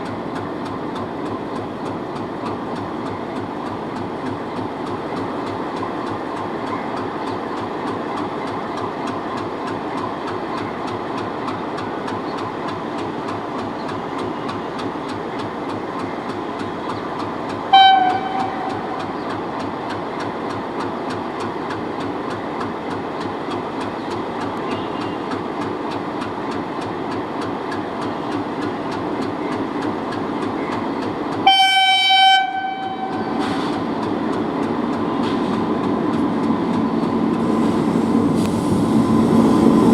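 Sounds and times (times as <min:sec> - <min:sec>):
diesel locomotive engine idling: 0:00.0 - 0:39.9
locomotive horn blasts: 0:17.7 - 0:19.0, 0:31.4 - 0:33.4.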